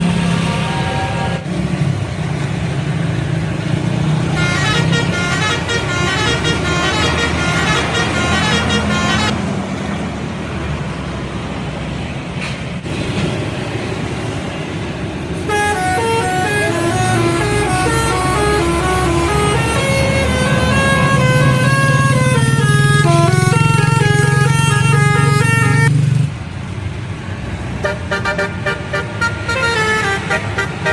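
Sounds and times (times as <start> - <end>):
multi-tone bus air horns: 0.0 - 1.6, 4.2 - 9.5, 15.4 - 25.9, 27.8 - 30.9
bus engine running: 0.0 - 30.9.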